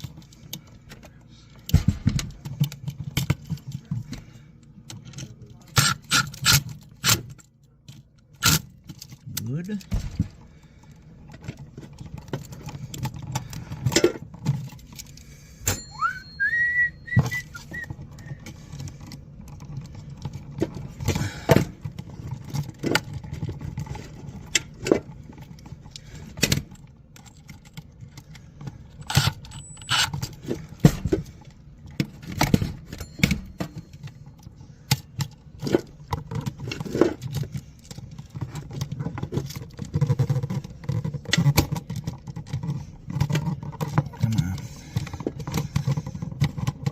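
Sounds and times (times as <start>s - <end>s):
steady low hum: 0.0s - 46.9s
short rising whistle: 15.9s - 17.9s.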